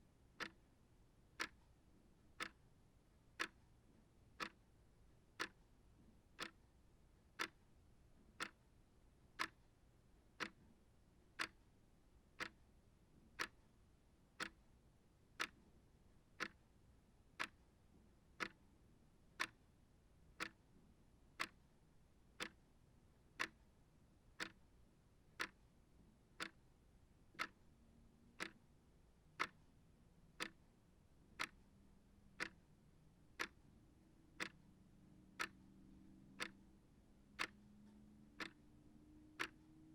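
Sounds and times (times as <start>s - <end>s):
clock ticking: 0.4s - 0.6s, 1.4s - 1.7s, 2.4s - 2.6s, 3.4s - 3.6s, 4.4s - 4.6s, 5.4s - 5.6s, 6.4s - 6.6s, 7.4s - 7.6s, 8.4s - 8.6s, 9.4s - 9.6s, 10.4s - 10.6s, 11.4s - 11.7s, 12.4s - 12.7s, 13.3s - 13.6s, 14.4s - 14.6s, 15.4s - 15.6s, 16.4s - 16.6s, 17.4s - 17.6s, 18.4s - 18.6s, 19.4s - 19.7s, 20.4s - 20.6s, 21.4s - 21.6s, 22.4s - 22.6s, 23.4s - 23.7s, 24.4s - 24.7s, 25.4s - 25.6s, 26.4s - 26.7s, 27.3s - 27.6s, 28.4s - 28.7s, 29.4s - 29.7s, 30.4s - 30.7s, 31.3s - 31.7s, 32.4s - 39.9s.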